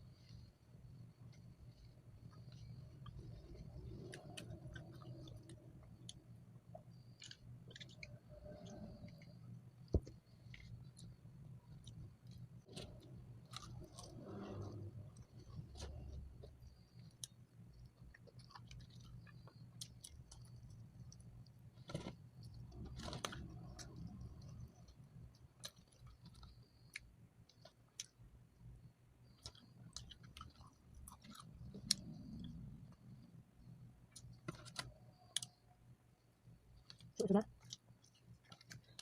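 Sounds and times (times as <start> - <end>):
person chewing fried food: 10.2 - 28.2, 29.2 - 32.6.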